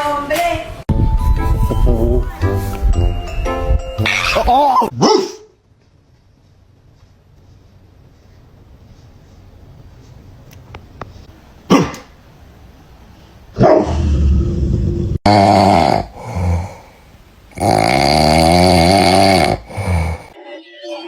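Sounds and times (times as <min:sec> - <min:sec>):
dog barking: 0:05.0 - 0:05.5, 0:11.7 - 0:12.1, 0:13.6 - 0:14.0.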